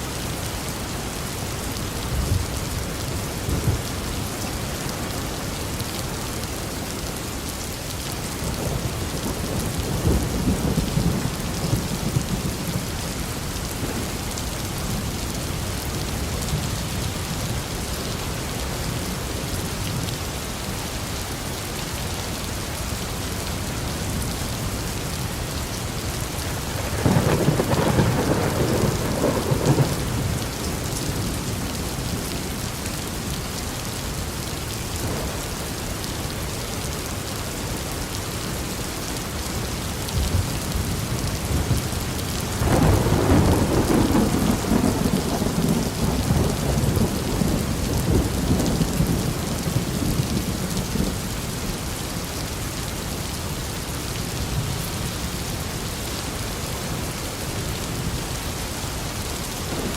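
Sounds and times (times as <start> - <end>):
heavy rain: 0.0 - 59.9
thunder rumbling: 26.6 - 32.2, 40.2 - 51.1.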